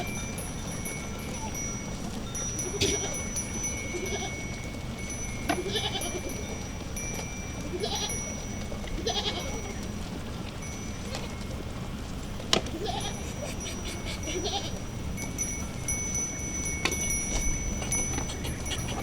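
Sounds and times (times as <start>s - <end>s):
goats bleating: 2.7s - 3.2s, 5.5s - 6.4s, 7.7s - 8.2s, 9.0s - 9.8s, 12.7s - 14.8s, 17.8s - 19.0s
thin high steady tone: 12.8s - 19.0s.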